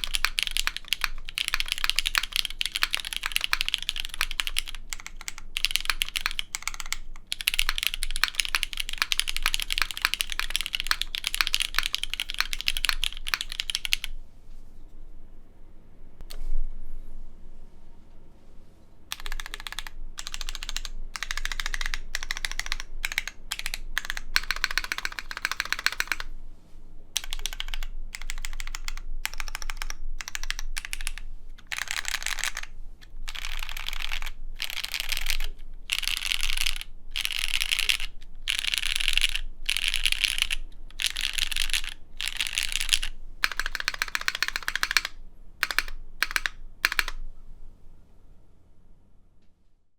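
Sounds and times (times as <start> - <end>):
typing on mechanical keyboard: 0.0 - 14.2, 19.1 - 26.3, 27.2 - 47.2.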